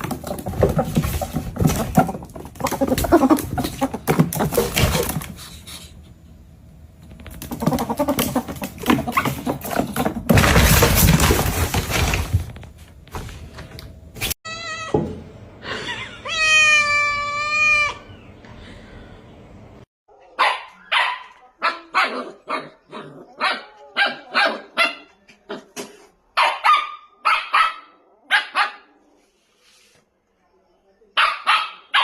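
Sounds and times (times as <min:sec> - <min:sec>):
cat meowing: 0:16.2 - 0:18.1.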